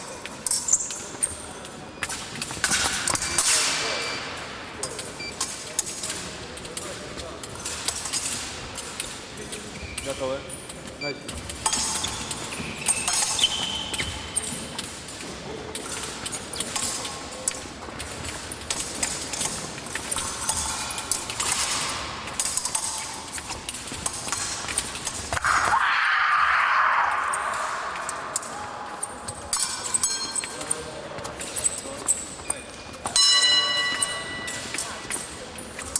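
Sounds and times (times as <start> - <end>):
fencing blades clicking: 11.5 - 25.7.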